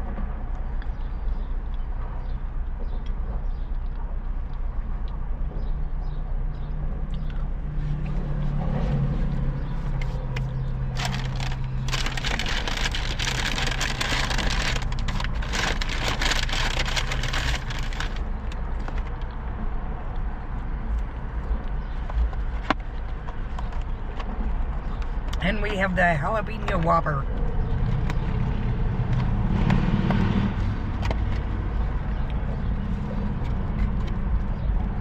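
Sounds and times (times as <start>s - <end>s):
low rumble of car: 0.0s - 35.0s
paper food wrapper crinkling: 10.3s - 19.1s.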